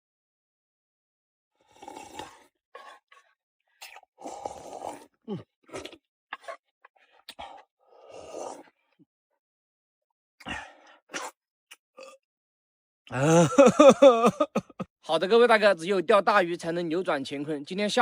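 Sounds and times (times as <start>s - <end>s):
person slurping noodles: 1.6s - 6.6s, 7.2s - 8.9s, 10.4s - 11.4s.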